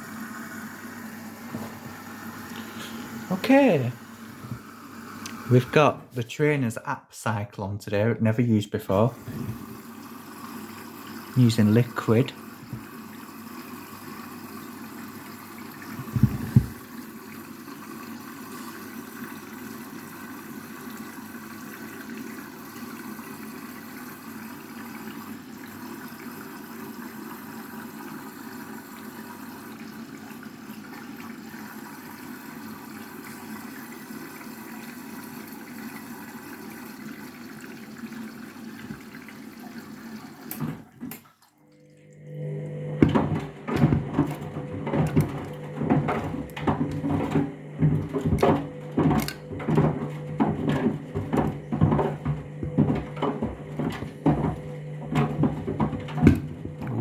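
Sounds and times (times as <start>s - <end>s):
water rushing in: 9.1s - 17.2s, 37.4s - 57.0s
loud thump: 16.0s - 16.8s, 43.0s - 57.0s.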